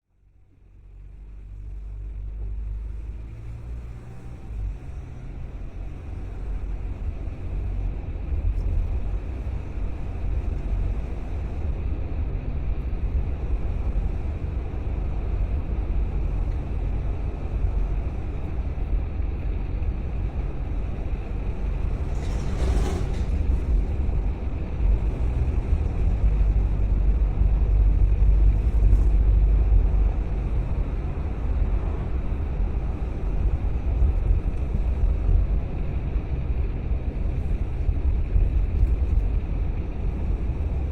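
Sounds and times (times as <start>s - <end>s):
car engine and road noise: 0.0s - 40.9s
wind noise: 4.1s - 40.9s.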